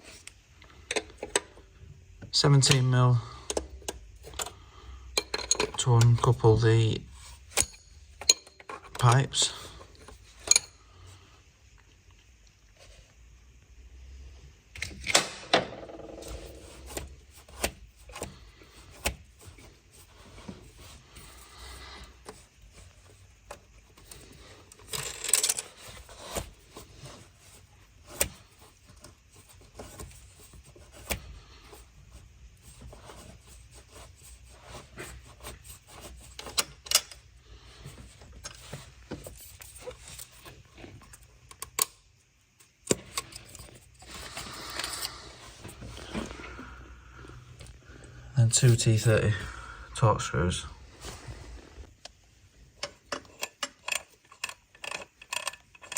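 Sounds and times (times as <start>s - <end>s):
tools clinking on metal: 5.2s - 6.2s, 7.5s - 9.2s.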